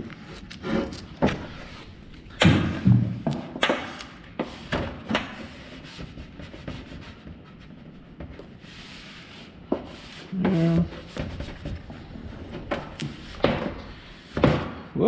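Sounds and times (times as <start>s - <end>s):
squeegee rubbing vinyl: 3.8s - 14.9s.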